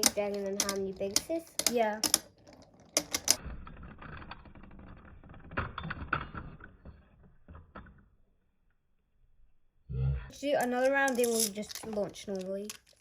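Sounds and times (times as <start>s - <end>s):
sharp collision clicks: 0.0s - 3.4s
spinning tops rattling together: 10.6s - 13.0s.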